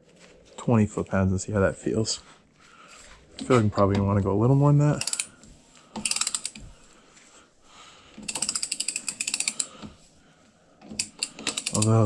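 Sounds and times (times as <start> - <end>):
torque wrench ratchet clicking: 5.0 - 5.3, 6.0 - 6.6, 8.2 - 9.7, 10.9 - 12.0.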